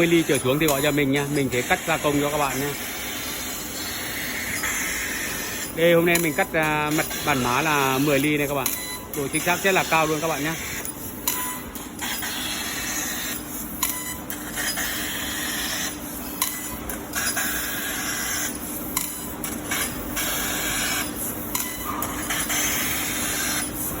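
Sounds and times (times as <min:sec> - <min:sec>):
faint machine hum: 0:00.0 - 0:24.0
laser cutter hissing: 0:00.0 - 0:24.0.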